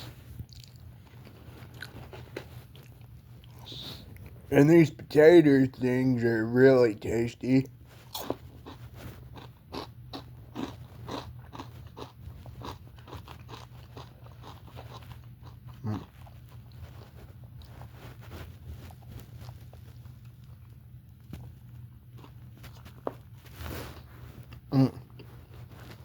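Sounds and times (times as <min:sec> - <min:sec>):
person chewing crunchy food: 0:00.0 - 0:04.7, 0:07.0 - 0:26.0.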